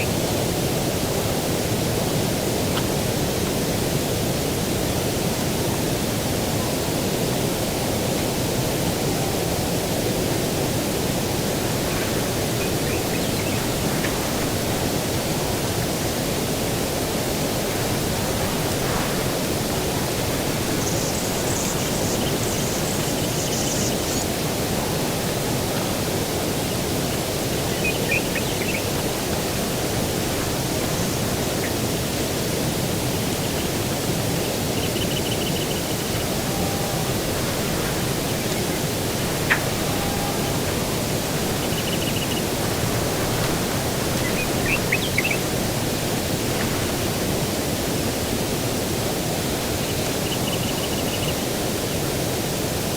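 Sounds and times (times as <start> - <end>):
low rushing outdoor ambience: 0.0 - 52.9
bird chirps: 27.7 - 28.9, 44.2 - 45.4.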